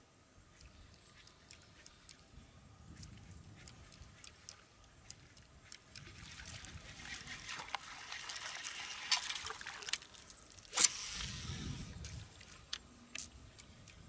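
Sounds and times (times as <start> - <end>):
water splashing and trickling: 4.3 - 13.3
sharp crack: 10.6 - 11.7.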